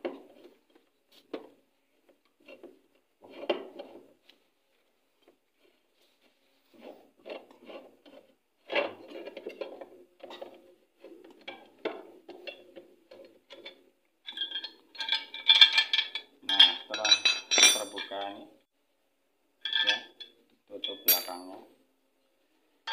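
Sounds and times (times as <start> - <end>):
metallic clinks with ringing tone: 21.0 - 21.6.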